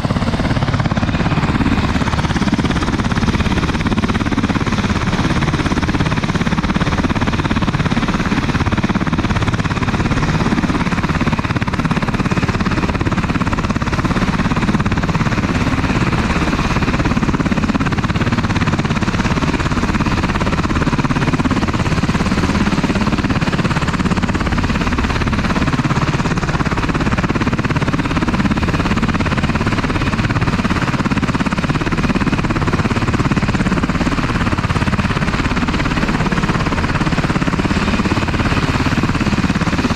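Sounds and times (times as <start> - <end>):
helicopter rotor and turbine: 0.0 - 39.9.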